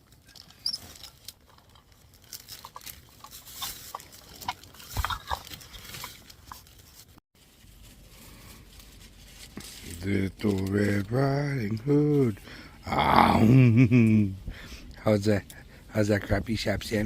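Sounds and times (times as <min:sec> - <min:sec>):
rustling and crinkling: 0:00.0 - 0:12.4.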